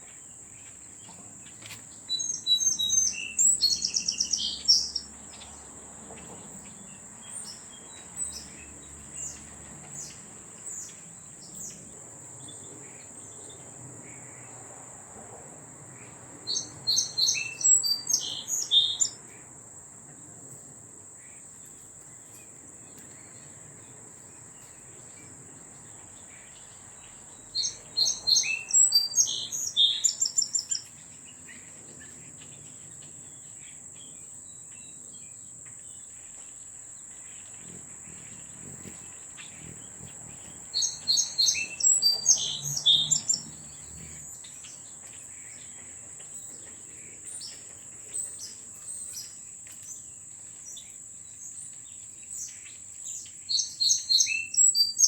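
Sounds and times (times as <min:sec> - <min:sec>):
bird chirps: 0:00.0 - 0:14.5, 0:16.0 - 0:19.4, 0:24.6 - 0:55.0
songbird singing high notes: 0:40.8 - 0:44.2.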